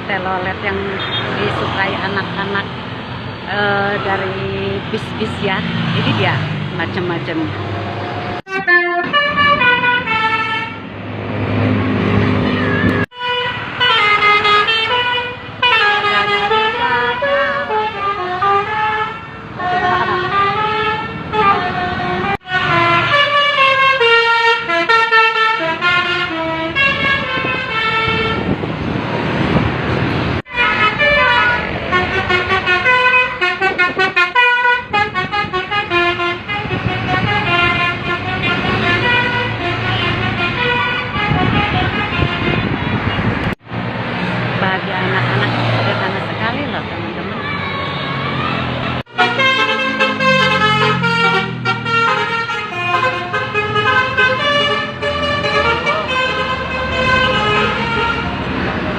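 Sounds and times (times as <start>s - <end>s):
multi-tone bus horn melodies: 8.4s - 10.9s, 12.1s - 28.6s, 30.4s - 43.4s, 47.5s - 58.9s.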